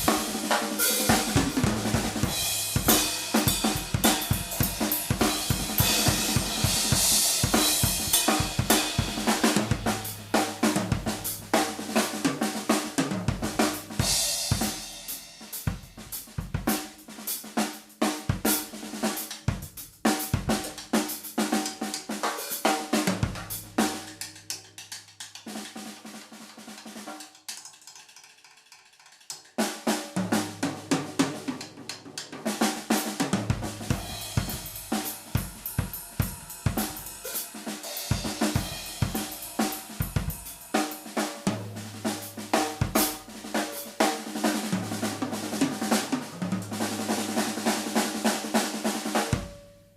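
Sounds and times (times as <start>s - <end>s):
ringing bass drum notes: 0.0s - 11.8s, 33.4s - 37.2s
drum kit groove: 0.0s - 27.5s, 29.6s - 49.9s.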